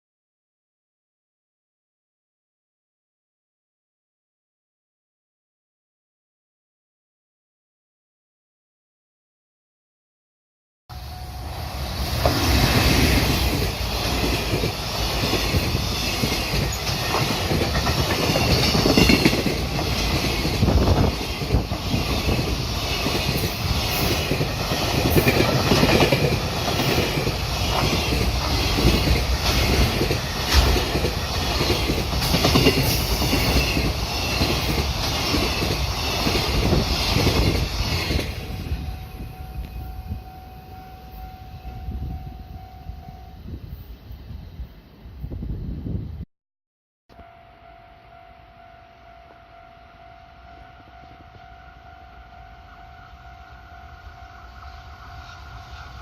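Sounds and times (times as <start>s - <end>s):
crossing warning signal tone: 10.9s - 34.6s, 38.3s - 44.0s, 47.1s - 56.0s
train wheels clacking on rails: 12.0s - 38.6s.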